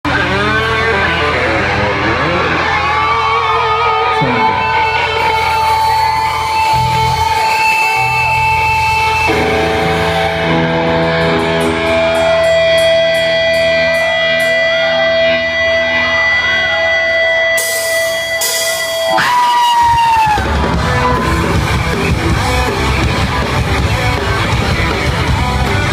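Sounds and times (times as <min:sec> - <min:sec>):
electric guitar held notes: 0:00.0 - 0:25.9
live rock band music: 0:00.0 - 0:25.9.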